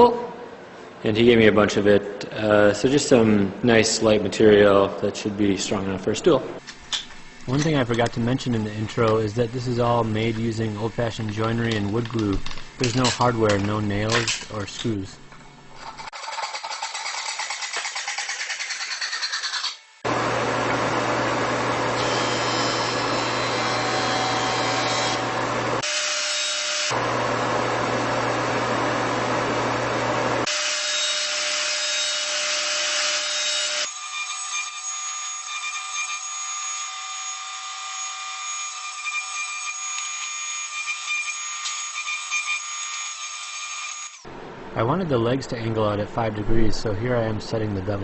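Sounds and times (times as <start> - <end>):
power tool cutting wood: 16.1 - 20.9, 21.6 - 27.2, 30.4 - 44.2
high-pitched machine whine: 17.6 - 29.8.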